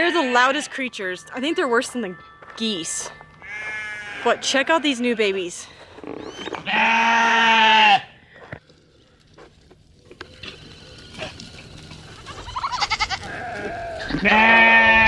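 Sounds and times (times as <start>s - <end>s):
sheep bleating: 0.0s - 2.7s, 3.4s - 5.4s, 6.6s - 8.1s, 12.2s - 15.0s.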